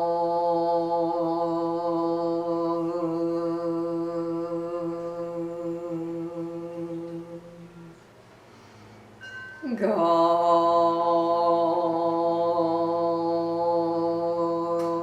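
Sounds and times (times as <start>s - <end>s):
person chanting a steady tone: 0.0s - 8.9s, 9.6s - 15.0s.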